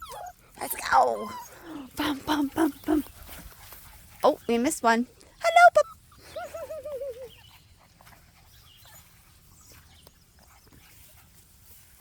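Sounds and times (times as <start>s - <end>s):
puppies squeaking: 0.0s - 1.9s
puppies rustling: 0.0s - 5.4s.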